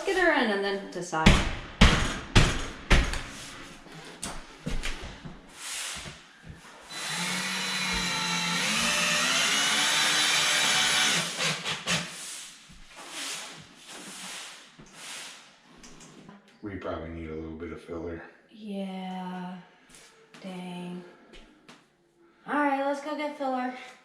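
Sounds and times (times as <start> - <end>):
power drill running: 6.9 - 12.1.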